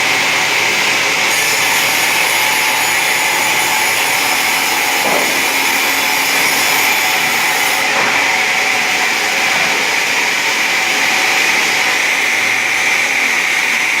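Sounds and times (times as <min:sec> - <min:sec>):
sawing machine hissing: 0:00.0 - 0:14.0.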